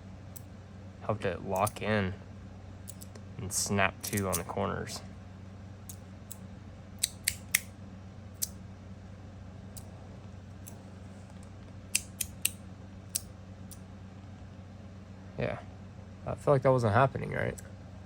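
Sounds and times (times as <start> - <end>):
magnetic slider metal clicks: 7.0 - 7.7.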